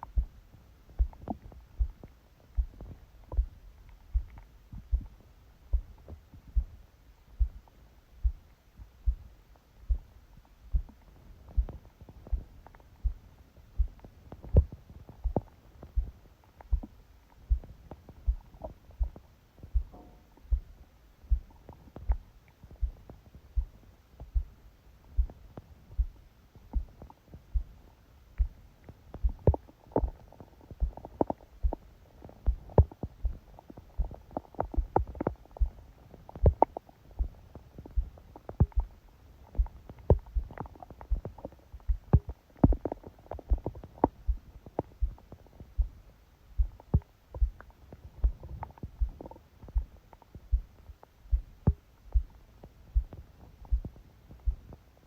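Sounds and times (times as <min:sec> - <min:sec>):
heartbeat thumping: 0:00.0 - 0:54.9
stomach gurgling and rumbling: 0:00.0 - 0:55.0.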